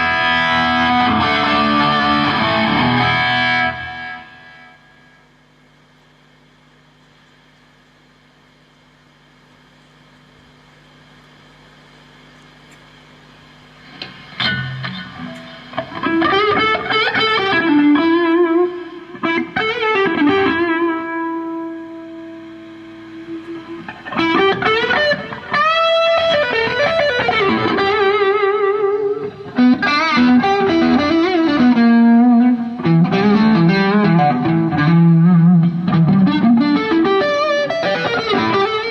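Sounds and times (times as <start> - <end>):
electric guitar lead melody: 0.0 - 5.1, 14.0 - 38.9
faint held hum: 0.0 - 38.9.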